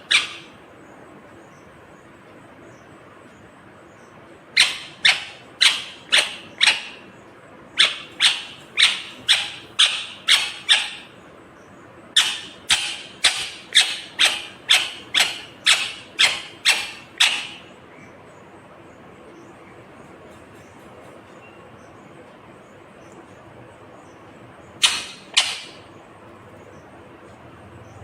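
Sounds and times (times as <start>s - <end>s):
parakeet calling: 0.0s - 1.7s, 3.9s - 18.5s, 24.0s - 27.0s.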